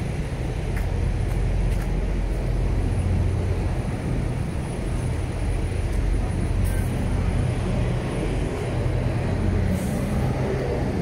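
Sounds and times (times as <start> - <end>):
heavy truck engine rumbling: 0.0 - 11.0.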